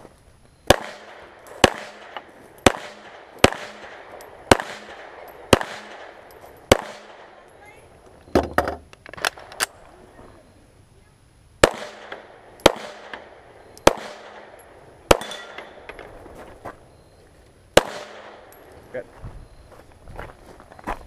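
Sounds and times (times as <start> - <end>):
pistol shots echoing: 0.7 - 7.6, 11.6 - 16.1, 17.7 - 18.7.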